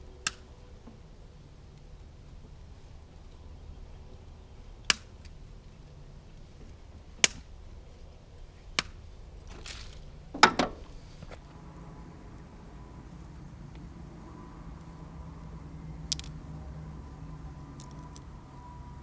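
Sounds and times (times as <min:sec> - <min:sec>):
brief rustle: 0:11.3 - 0:19.0.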